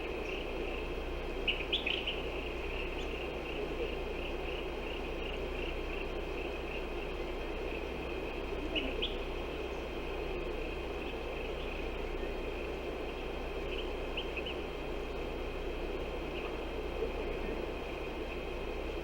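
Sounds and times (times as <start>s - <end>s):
high insect drone: 0.0s - 19.0s.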